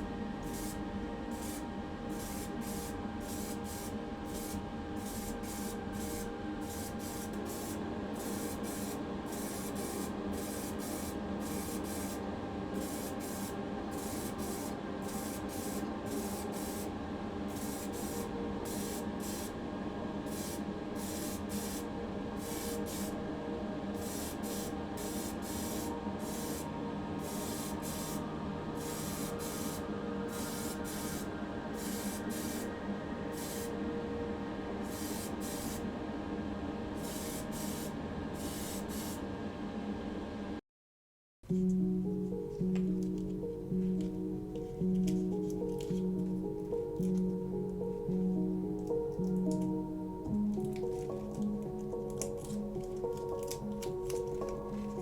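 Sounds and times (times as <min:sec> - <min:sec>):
spraying hiss: 0:20.3 - 0:23.2, 0:24.0 - 0:28.2, 0:28.8 - 0:32.7, 0:33.3 - 0:33.8, 0:34.8 - 0:35.9, 0:37.0 - 0:39.2.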